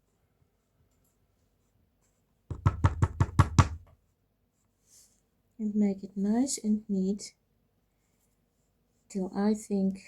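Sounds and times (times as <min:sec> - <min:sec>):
clay tapped against board: 0:02.5 - 0:04.0.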